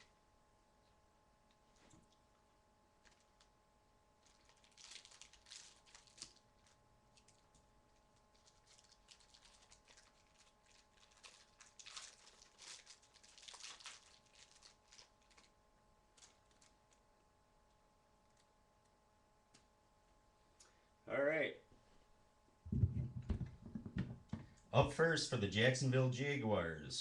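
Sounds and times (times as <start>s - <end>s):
card pack crinkling and tearing: 3.0s - 3.5s, 4.2s - 17.0s.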